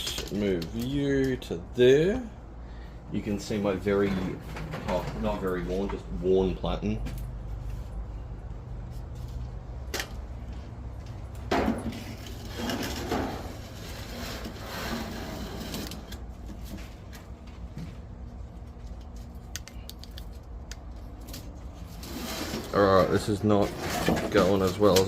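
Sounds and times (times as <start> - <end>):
metal knocks and clunks: 11.5 - 13.5.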